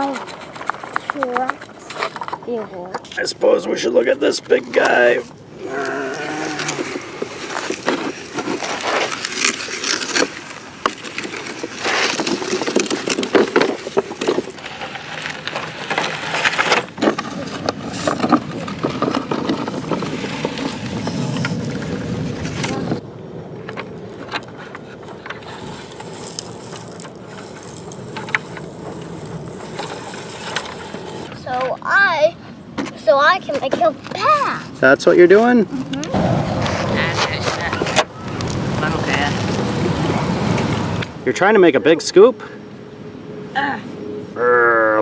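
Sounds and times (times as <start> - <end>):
toy trucks scraping through dirt: 4.0 - 23.0, 24.3 - 32.1.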